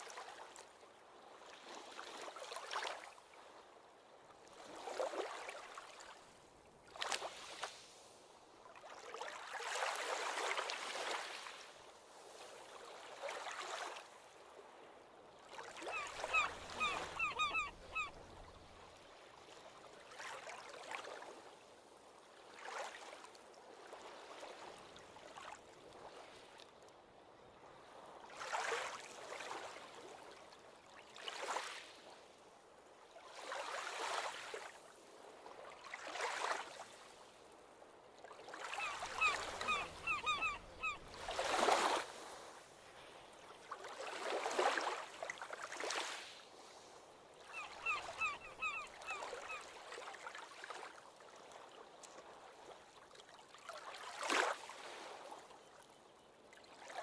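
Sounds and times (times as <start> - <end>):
ocean waves washing on beach: 4.4 - 21.5, 33.2 - 51.0
bird short calls: 15.9 - 18.1, 38.8 - 41.0.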